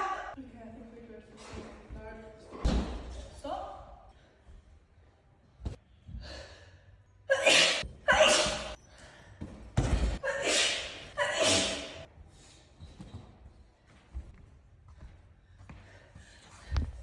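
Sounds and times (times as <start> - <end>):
person sneezing: 7.3 - 8.8, 10.2 - 12.0.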